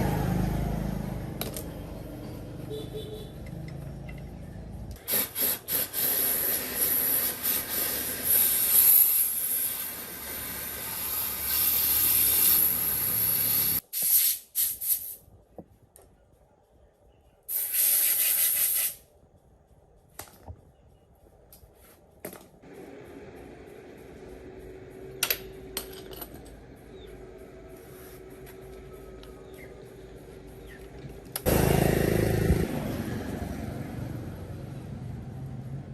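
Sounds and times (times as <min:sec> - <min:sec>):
hissing spray: 0:05.0 - 0:15.2, 0:17.5 - 0:19.0.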